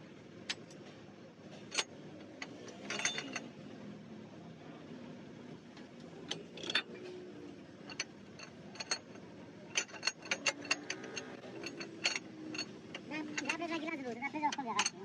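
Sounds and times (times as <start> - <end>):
metal tools clinking: 1.6 - 3.6, 6.3 - 7.1, 7.8 - 15.0.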